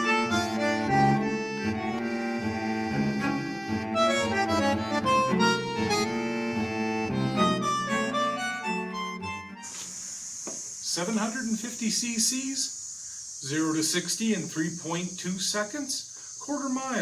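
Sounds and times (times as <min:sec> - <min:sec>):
accordion-like reed melody: 0:00.0 - 0:12.3.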